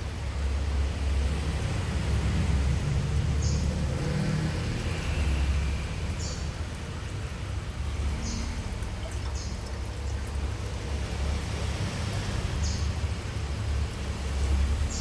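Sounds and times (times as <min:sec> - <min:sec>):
aquarium equipment humming: 0:04.8 - 0:15.0
water splashing: 0:05.2 - 0:14.9.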